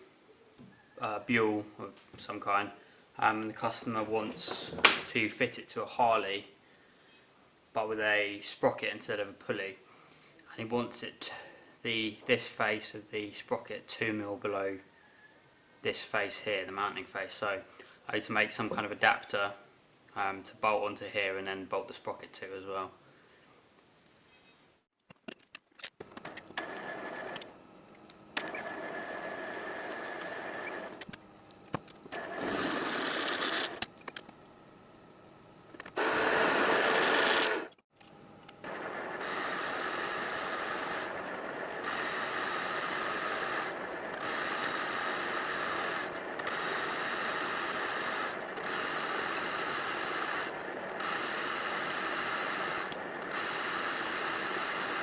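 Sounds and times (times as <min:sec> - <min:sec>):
machine tool gear whine: 0:26.1 - 0:55.0.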